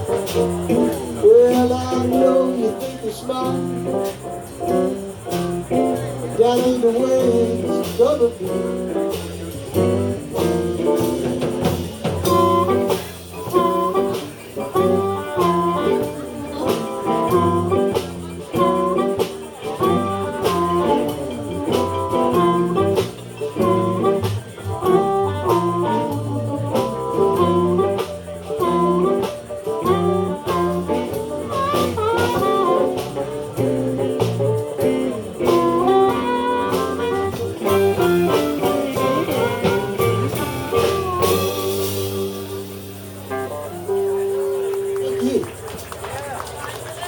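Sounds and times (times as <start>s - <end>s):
bass: 0.0s - 47.0s
drums: 0.0s - 47.0s
lead guitar solo: 9.8s - 46.2s.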